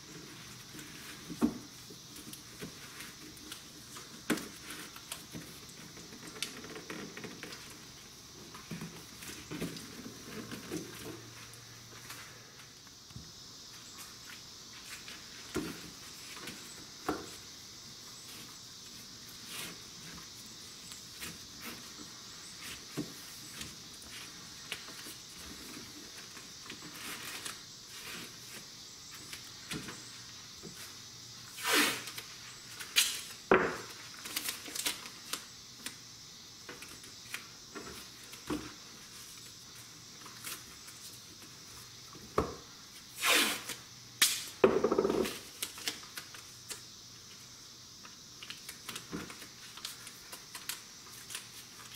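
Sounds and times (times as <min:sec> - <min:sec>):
tape tearing loudly: 0:31.5 - 0:33.4, 0:43.1 - 0:44.6
tape pulled off roll: 0:31.5 - 0:35.4, 0:43.1 - 0:46.4.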